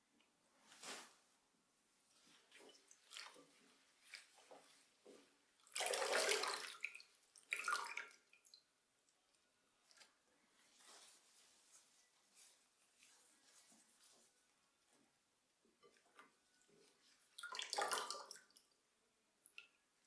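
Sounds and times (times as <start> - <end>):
water splashing and trickling: 5.6 - 8.7, 16.7 - 18.7.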